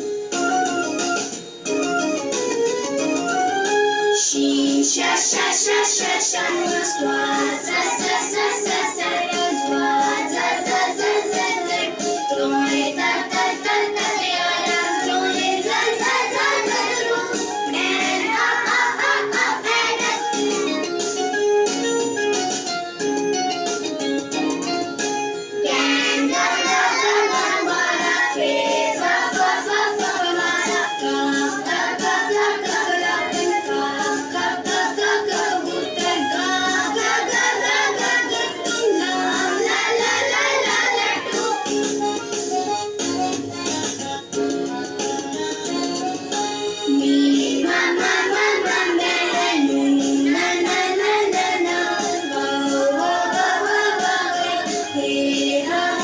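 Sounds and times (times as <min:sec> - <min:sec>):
backing music: 0:00.0 - 0:56.0
children's song singing: 0:00.0 - 0:56.0
child-like voice singing: 0:25.7 - 0:41.7.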